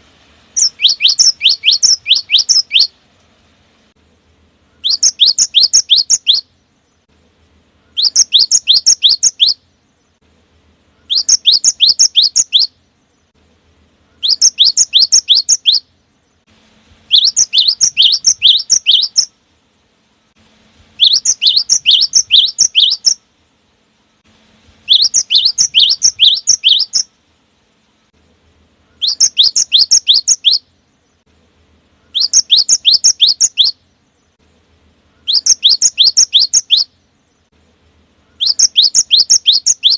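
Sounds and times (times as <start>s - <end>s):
bird singing sharp high notes: 0.6s - 3.0s, 4.8s - 6.5s, 7.9s - 9.6s, 11.0s - 12.8s, 14.1s - 15.9s, 17.1s - 19.3s, 21.0s - 23.2s, 24.8s - 27.1s, 28.9s - 30.7s, 32.0s - 33.8s, 35.1s - 37.0s, 38.3s - 39.9s.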